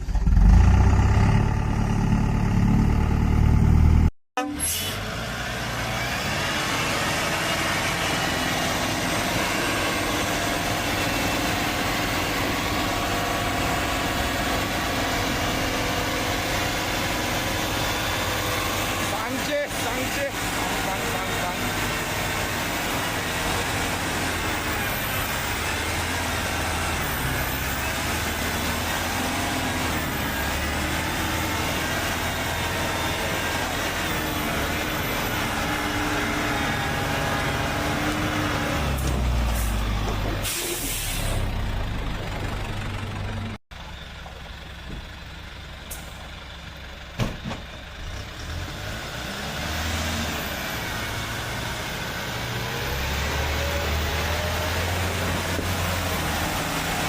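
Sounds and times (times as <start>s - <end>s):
truck diesel engine running: 0.0s - 57.0s
air brakes hissing: 4.4s - 5.1s, 39.5s - 41.5s.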